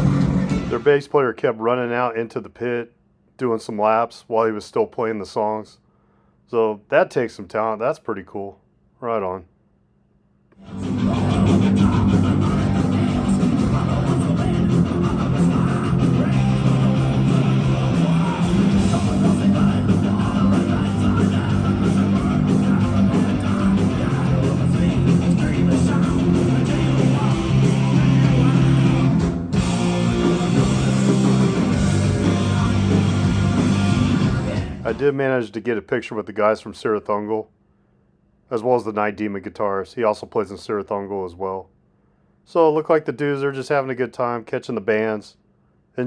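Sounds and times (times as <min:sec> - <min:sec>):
heavy metal band playing: 0:00.0 - 0:00.9, 0:10.6 - 0:35.0
person singing: 0:10.6 - 0:35.0.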